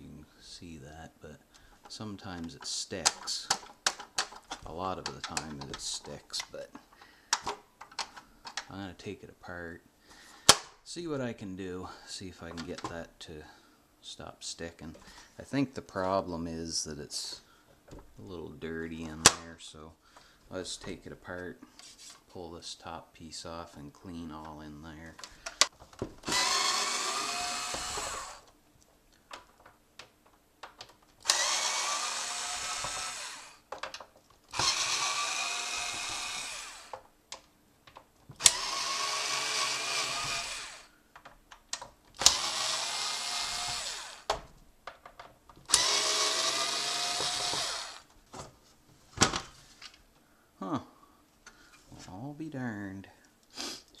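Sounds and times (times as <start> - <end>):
power drill running: 26.2 - 28.5, 31.2 - 33.6, 34.5 - 37.0, 38.4 - 40.9, 42.2 - 44.3, 45.7 - 48.1
small clicks and taps: 36.9 - 38.4, 41.1 - 42.0.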